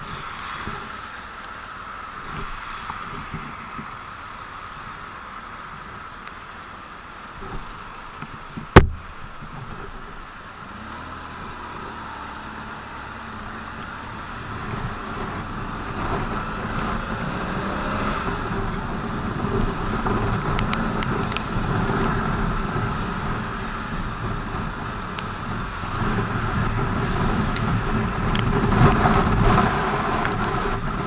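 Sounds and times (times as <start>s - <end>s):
wind and road noise: 0.0s - 31.0s
motorcycle engine running: 10.6s - 31.0s
faint clicks: 19.5s - 22.2s.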